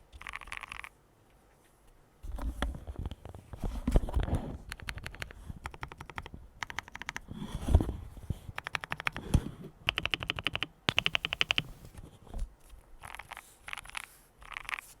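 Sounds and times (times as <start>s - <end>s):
mechanical keyboard typing: 4.7s - 7.3s, 8.6s - 9.3s, 9.9s - 11.9s
deeper keyboard thumps: 10.9s - 11.9s.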